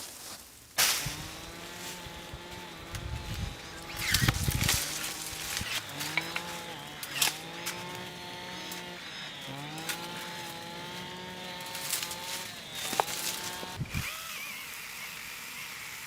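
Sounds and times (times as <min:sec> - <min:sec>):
cordless power tool motor whine: 0:01.0 - 0:16.0.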